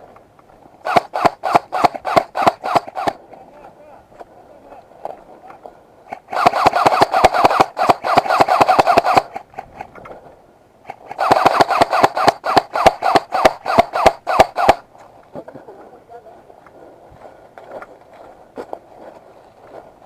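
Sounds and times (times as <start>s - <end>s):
airsoft gun firing full auto: 0.8s - 3.2s, 6.1s - 9.6s, 10.9s - 14.8s.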